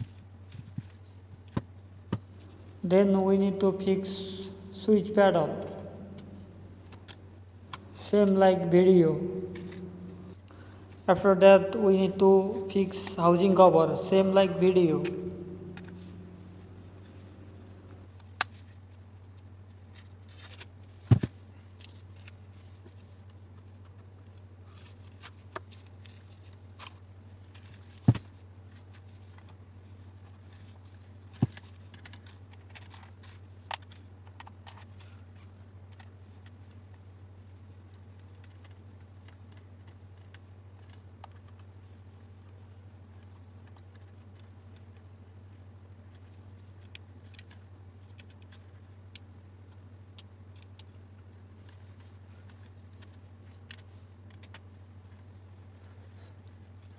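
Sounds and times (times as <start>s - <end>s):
steady low hum: 1.8s - 18.4s.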